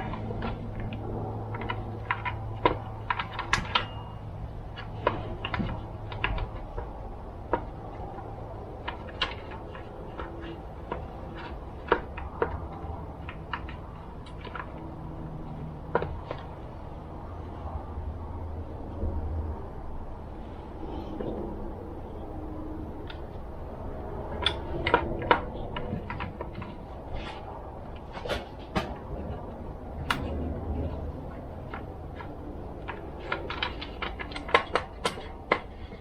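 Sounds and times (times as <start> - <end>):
small parts clicking and tapping: 0.0 - 16.8, 24.2 - 36.0.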